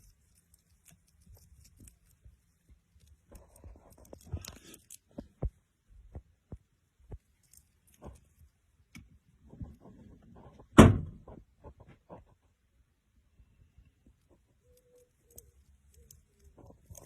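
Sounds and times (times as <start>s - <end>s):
loud thump: 10.7s - 11.3s.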